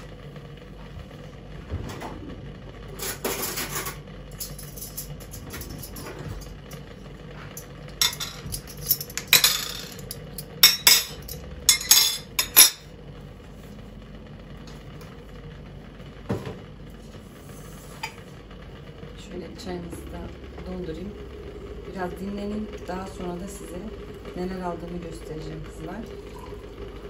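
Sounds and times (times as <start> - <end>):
dishes and cutlery clinking: 8.0 - 12.8.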